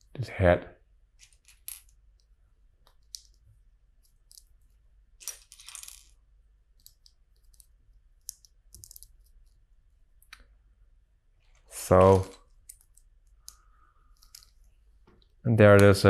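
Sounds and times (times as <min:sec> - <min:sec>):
rattle of loose pieces: 0:05.2 - 0:06.2.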